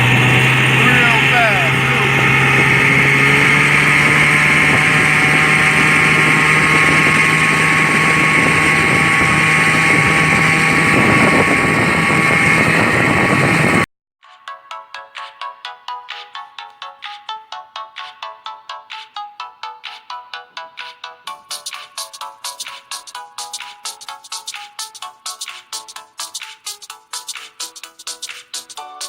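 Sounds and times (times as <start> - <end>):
outboard motor running: 0.0 - 13.9
wind on microphone: 1.8 - 13.9.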